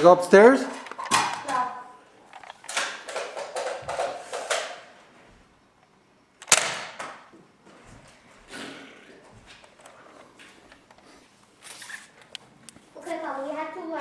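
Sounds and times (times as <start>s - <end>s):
toy blaster clicks and rattles: 2.3s - 4.8s
foam dart blaster firing snap: 6.4s - 7.2s.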